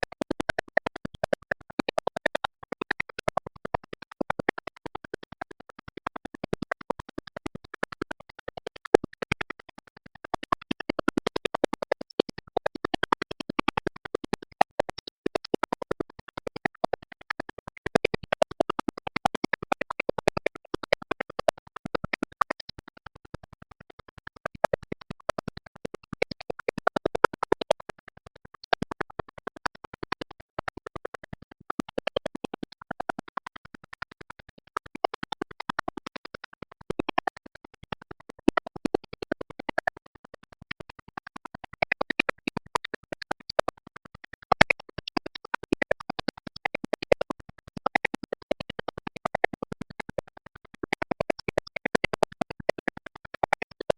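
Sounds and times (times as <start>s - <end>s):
music with clicking and scratching: 0.0s - 9.6s, 34.8s - 40.0s, 40.8s - 53.9s.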